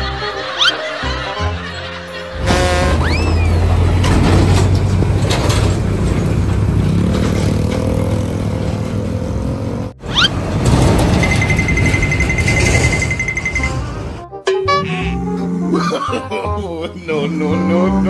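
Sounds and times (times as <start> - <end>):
heavy vehicle engine humming: 1.7 - 14.2.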